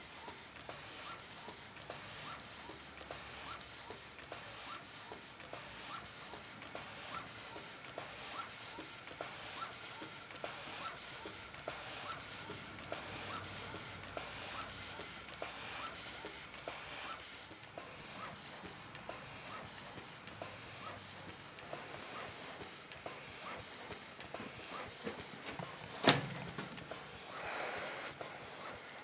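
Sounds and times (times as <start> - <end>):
steam hissing: 4.3 - 29.0
steam engine knocking: 10.3 - 27.4.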